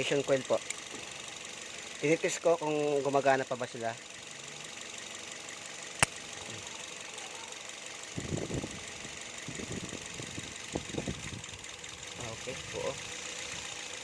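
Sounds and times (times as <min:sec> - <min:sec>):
car engine running: 0:00.0 - 0:14.0
sharp click: 0:06.0 - 0:06.2.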